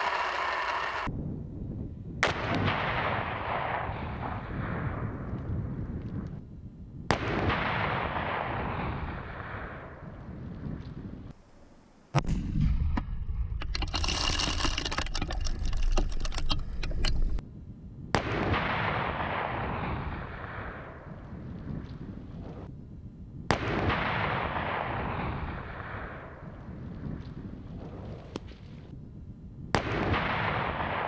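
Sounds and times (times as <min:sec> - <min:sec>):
explosion blasts with rolling rumble: 0:01.0 - 0:11.3, 0:12.2 - 0:13.8, 0:18.1 - 0:22.7, 0:23.4 - 0:28.6, 0:29.7 - 0:31.0
crackling: 0:12.9 - 0:17.4.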